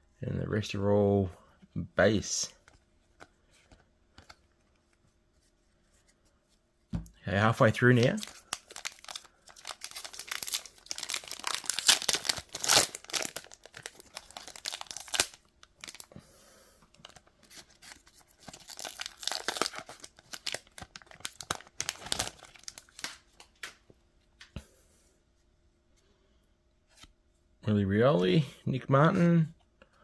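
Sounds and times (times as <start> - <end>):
foil wrapper tearing and crinkling: 7.9 - 16.1, 17.0 - 23.2.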